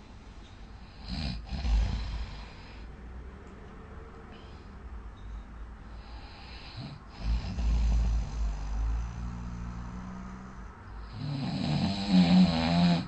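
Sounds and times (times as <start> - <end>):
person snoring loudly: 1.0 - 2.7, 6.5 - 13.0.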